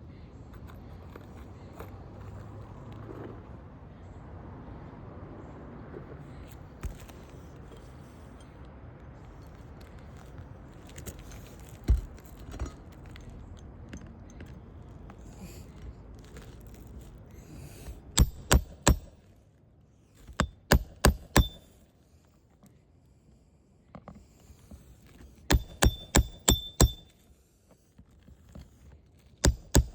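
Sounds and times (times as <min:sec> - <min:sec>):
dull thuds: 0:11.7 - 0:12.8, 0:18.2 - 0:19.1, 0:20.3 - 0:21.7, 0:25.5 - 0:27.1, 0:29.4 - 0:29.9
hammer striking nail: 0:18.2 - 0:19.2, 0:20.3 - 0:21.7, 0:25.5 - 0:27.1, 0:29.4 - 0:29.9.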